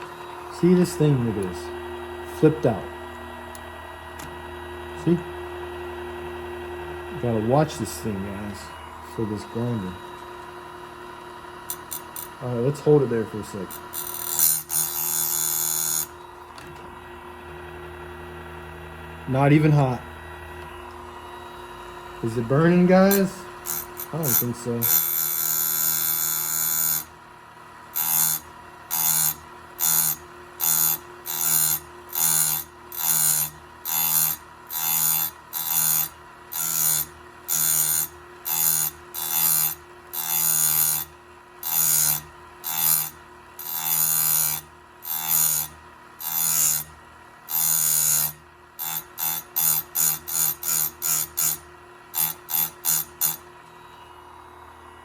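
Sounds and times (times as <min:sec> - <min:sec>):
grinder motor whining: 0:20.6 - 0:27.2
grinding wheel on chain: 0:47.5 - 0:51.6, 0:52.2 - 0:53.4.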